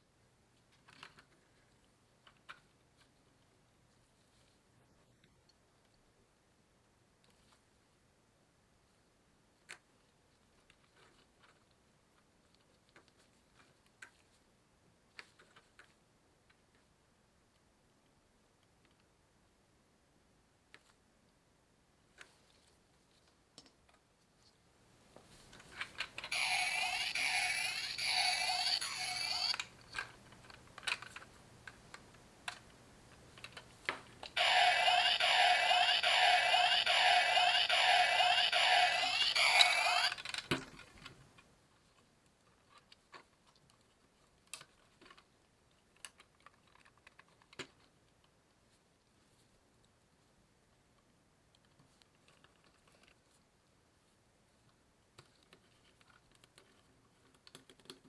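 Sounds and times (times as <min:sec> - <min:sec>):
toy electronic jingle: 0:26.3 - 0:29.6, 0:34.4 - 0:40.2
small plastic clicks: 0:55.2 - 0:58.0.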